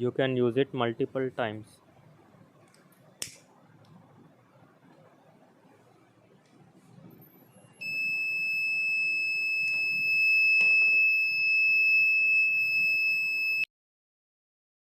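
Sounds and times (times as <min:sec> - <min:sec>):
high-pitched buzzer tone: 0:07.8 - 0:13.7.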